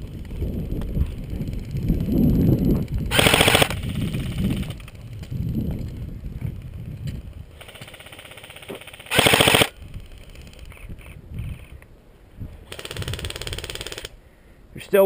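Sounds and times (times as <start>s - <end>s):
airsoft guns firing full auto: 3.1s - 4.8s, 7.6s - 10.1s, 12.7s - 14.2s.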